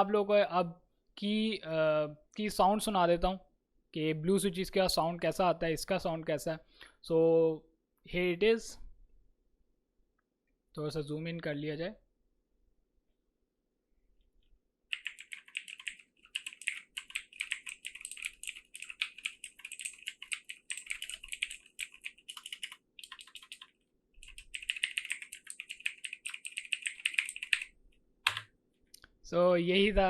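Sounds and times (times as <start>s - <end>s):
clicky keyboard typing: 14.9s - 28.5s.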